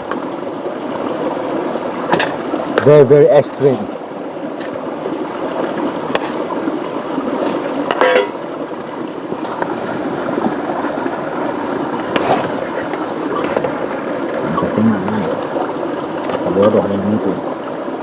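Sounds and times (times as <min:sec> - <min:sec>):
rain: 0:00.0 - 0:18.0
river water rushing: 0:00.0 - 0:18.0
thin high tone: 0:07.8 - 0:08.7.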